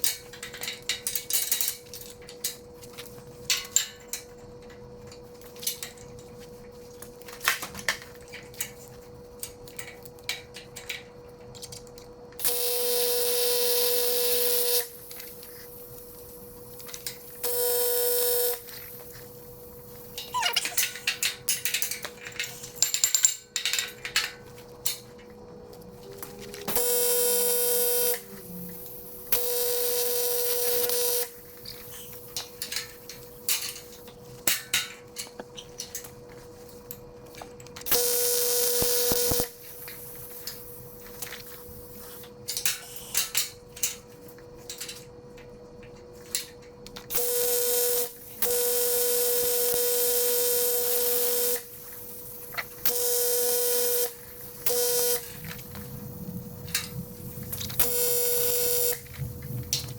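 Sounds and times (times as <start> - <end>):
arc welder buzzing: 12.4 - 22.0, 25.7 - 34.9, 37.8 - 42.4, 47.1 - 59.9
faint hum: 24.5 - 34.5, 49.8 - 59.9.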